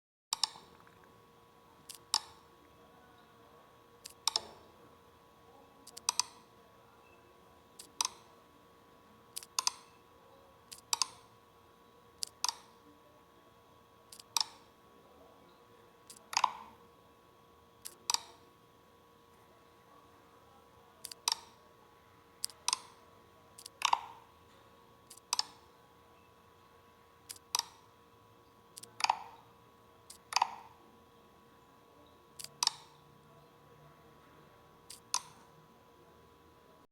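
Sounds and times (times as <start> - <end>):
computer mouse button clicking: 0.4 - 0.7, 1.9 - 2.4, 4.0 - 4.6, 5.9 - 6.4, 7.8 - 8.2, 9.4 - 9.9, 10.7 - 11.3, 12.2 - 12.8, 14.1 - 14.7, 16.1 - 16.7, 17.8 - 18.4, 21.0 - 21.6, 22.4 - 23.0, 23.6 - 24.2, 25.1 - 25.6, 27.3 - 27.8, 28.8 - 29.4, 30.1 - 30.8, 32.4 - 33.0, 34.9 - 35.5.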